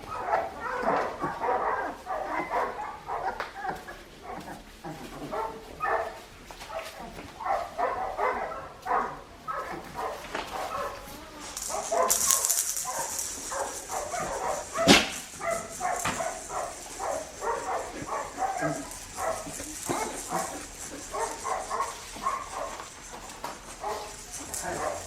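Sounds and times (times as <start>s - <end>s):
puppies yipping and barking: 0.0s - 25.0s
hiss: 10.3s - 25.0s.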